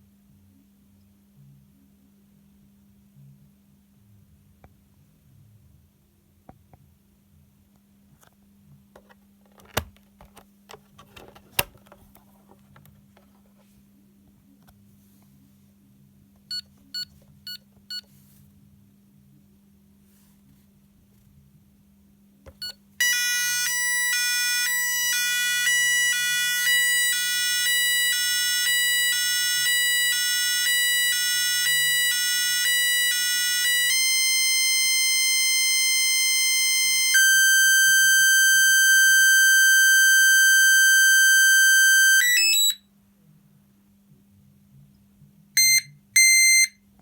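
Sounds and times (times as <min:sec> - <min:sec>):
intruder alarm electronic tones: 0:23.0 - 0:42.8, 0:45.6 - 0:46.7.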